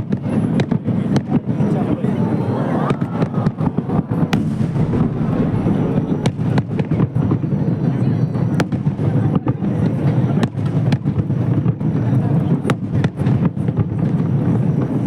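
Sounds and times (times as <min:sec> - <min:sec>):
crowd murmur: 0:00.0 - 0:13.4
fireworks bursts and cracks: 0:00.0 - 0:15.0.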